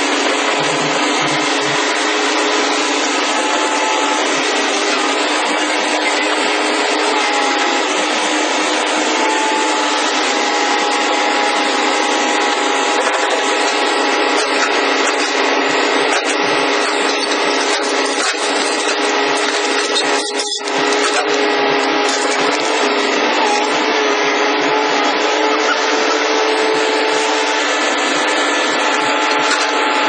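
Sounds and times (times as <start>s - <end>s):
hydraulic pile breaking machinery: 0.0s - 23.6s.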